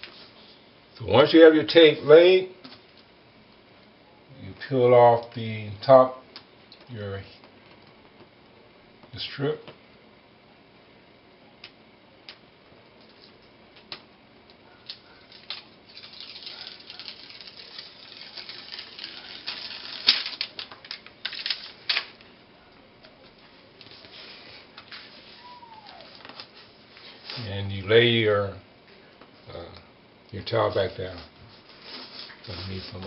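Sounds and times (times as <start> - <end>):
tape backing peeling and crackling: 13.0 - 22.3, 23.0 - 27.5, 30.6 - 33.0.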